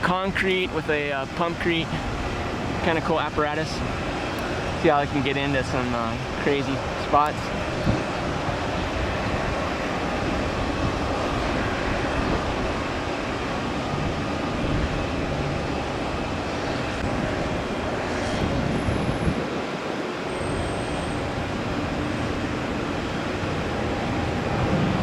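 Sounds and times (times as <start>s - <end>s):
construction machinery: 0.0s - 9.1s
road traffic rumble: 0.0s - 25.0s.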